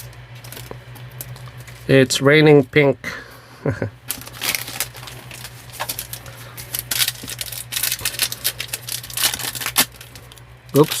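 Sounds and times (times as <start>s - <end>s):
foil wrapper crinkling: 0.0s - 1.9s, 4.1s - 11.0s
steady low hum: 0.0s - 11.0s.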